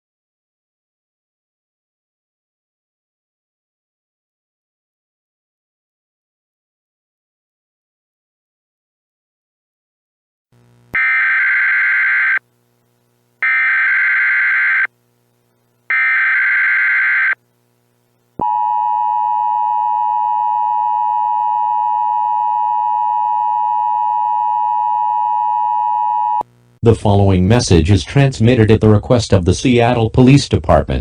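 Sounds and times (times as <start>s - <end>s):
digital header bursts: 11.0s - 12.4s, 13.4s - 14.9s, 15.9s - 17.4s.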